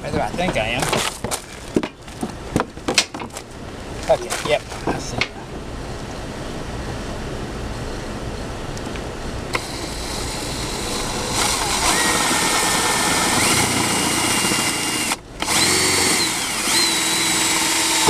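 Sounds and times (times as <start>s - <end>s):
electric drill whining: 9.5s - 18.0s.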